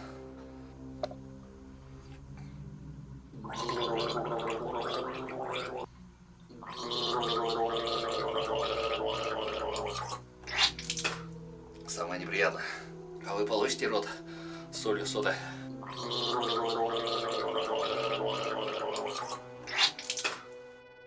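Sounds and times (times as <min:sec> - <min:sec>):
man gargling: 0:03.2 - 0:05.9, 0:06.5 - 0:11.2, 0:15.8 - 0:20.4.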